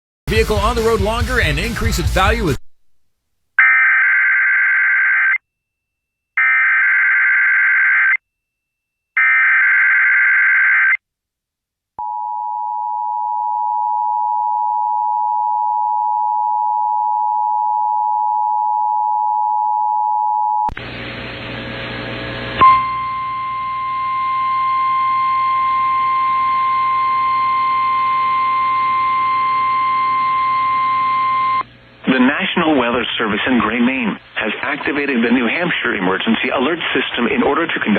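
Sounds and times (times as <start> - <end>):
two-tone attention signal: 22.6 - 31.6
radio hiss: 32.0 - 37.9.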